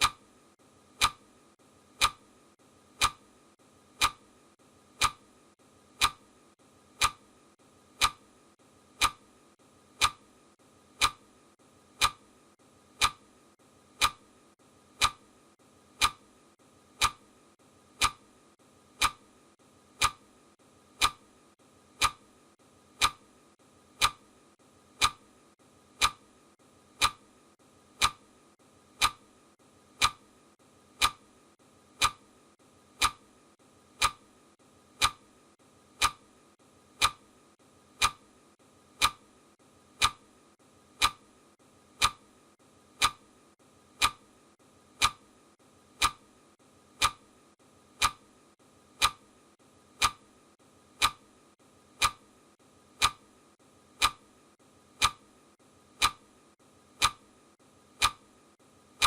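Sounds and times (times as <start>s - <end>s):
clock ticking: 0.0s - 0.3s, 0.9s - 1.3s, 1.9s - 2.3s, 2.9s - 3.3s, 3.9s - 6.3s, 6.9s - 8.3s, 8.9s - 9.3s, 9.9s - 10.3s, 10.9s - 11.3s, 11.9s - 12.3s, 12.9s - 13.3s, 13.9s - 14.3s, 14.9s - 15.3s, 15.9s - 16.3s, 16.9s - 17.3s, 17.9s - 18.3s, 18.9s - 19.3s, 19.9s - 20.3s, 20.9s - 21.3s, 21.9s - 22.3s, 22.9s - 23.3s, 23.9s - 24.3s, 25.0s - 25.3s, 25.9s - 26.3s, 26.9s - 27.3s, 27.9s - 28.3s, 28.9s - 29.3s, 29.9s - 30.3s, 30.9s - 31.3s, 31.9s - 32.3s, 32.9s - 33.3s, 33.9s - 34.3s, 35.0s - 35.3s, 36.0s - 36.3s, 37.0s - 37.3s, 38.0s - 38.3s, 38.9s - 39.3s, 40.0s - 40.3s, 41.0s - 41.3s, 41.9s - 42.3s, 42.9s - 43.3s, 43.9s - 44.2s, 45.0s - 45.3s, 46.0s - 46.3s, 47.0s - 47.4s, 48.0s - 48.3s, 49.0s - 49.3s, 50.0s - 50.3s, 51.0s - 51.3s, 52.0s - 52.3s, 52.9s - 53.3s, 53.9s - 54.3s, 54.9s - 55.3s, 56.0s - 56.3s, 57.0s - 57.3s, 58.0s - 58.3s.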